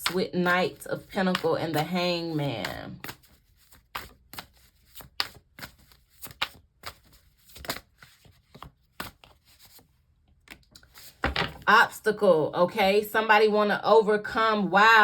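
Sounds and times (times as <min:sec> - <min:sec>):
cards being shuffled: 0:03.0 - 0:11.6.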